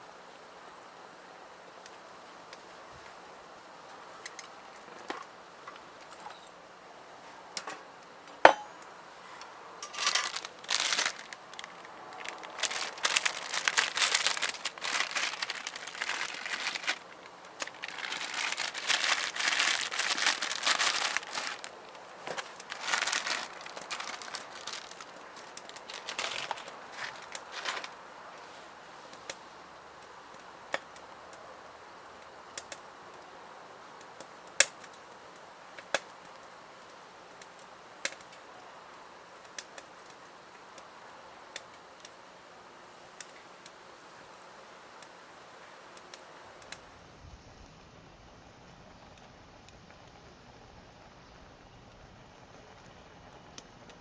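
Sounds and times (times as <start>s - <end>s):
plastic packaging crinkling and tearing: 9.8s - 28.0s.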